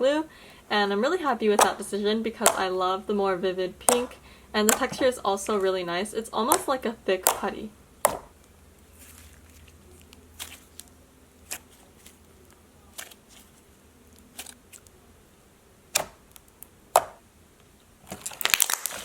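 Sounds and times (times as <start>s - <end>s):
slime popping and clicking: 3.9s - 5.0s, 6.5s - 7.5s.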